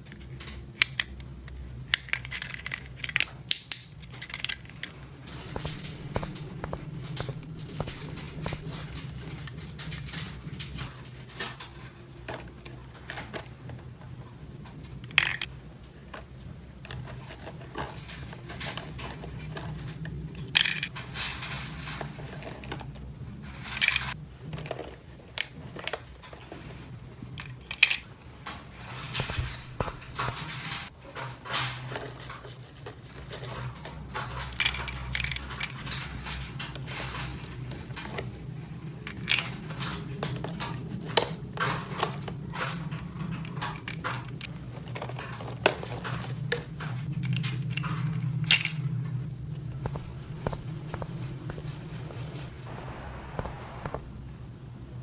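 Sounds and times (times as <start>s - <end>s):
low steady hum: 5.2s - 9.9s, 49.1s - 55.0s.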